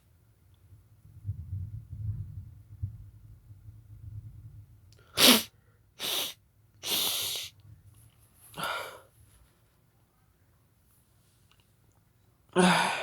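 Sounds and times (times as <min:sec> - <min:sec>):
noisy bursts of breath: 0:05.1 - 0:07.5
person sneezing: 0:05.2 - 0:07.5.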